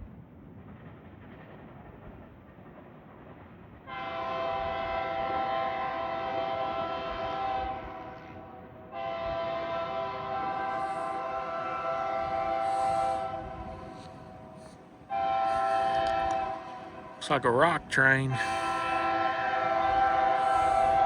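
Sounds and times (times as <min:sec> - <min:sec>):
train rumble: 0:00.0 - 0:21.0
locomotive air horn: 0:03.9 - 0:17.4, 0:18.3 - 0:21.0.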